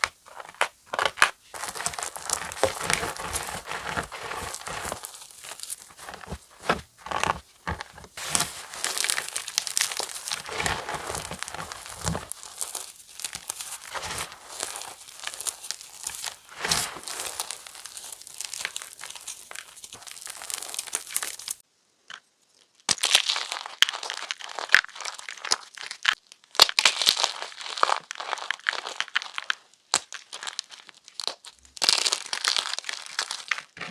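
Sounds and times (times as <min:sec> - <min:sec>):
chalk being crushed: 0:00.0 - 0:21.6.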